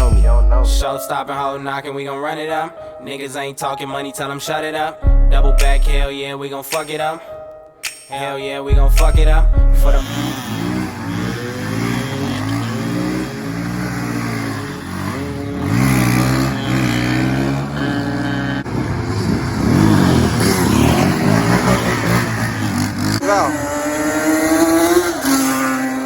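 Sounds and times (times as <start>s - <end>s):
off-road vehicle engine revving: 9.8s - 26.0s.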